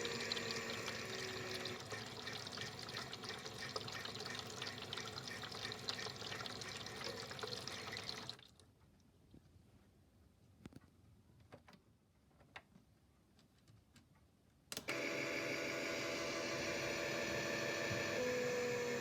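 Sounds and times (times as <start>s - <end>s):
small pump motor whining: 0.0s - 8.3s, 14.8s - 19.0s
water running and splashing: 0.0s - 8.6s.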